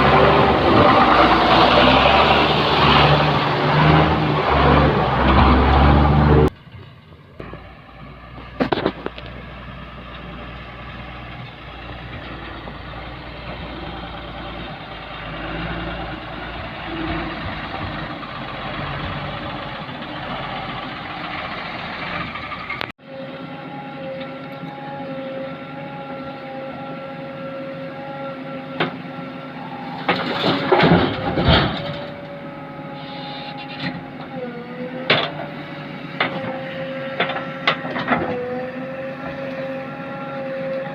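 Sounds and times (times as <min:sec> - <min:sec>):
diesel machinery rumbling: 0:00.0 - 0:40.9
engine whine with pitched tones: 0:00.0 - 0:40.9.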